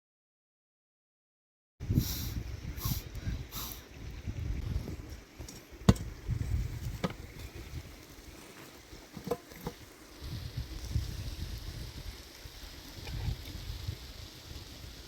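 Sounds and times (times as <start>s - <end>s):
wind buffeting microphone: 1.8s - 15.0s
sharp knocks: 5.9s - 6.1s.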